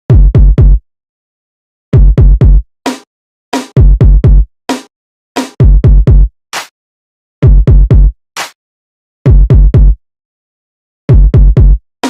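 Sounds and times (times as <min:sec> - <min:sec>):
sharp snare or clap hits: 0:08.4 - 0:08.6.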